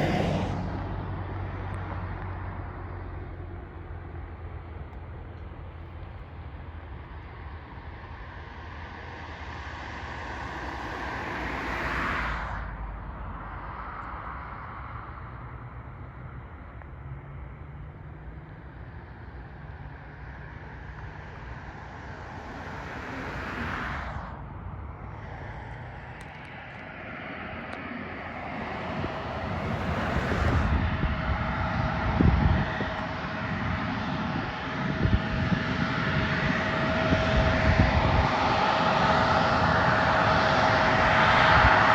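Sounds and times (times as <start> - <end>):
aircraft engine hum: 0.0 - 41.9
road vehicles passing: 0.0 - 41.9
wind buffeting microphone: 21.8 - 41.9.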